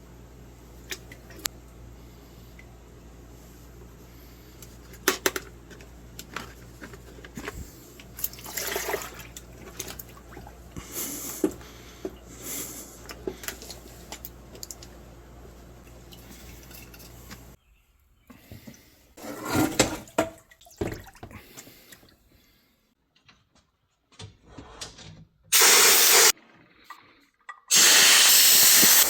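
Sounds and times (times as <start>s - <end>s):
steady low hum: 0.0s - 17.6s
liquid splashing or spraying: 25.5s - 26.3s, 27.7s - 29.0s.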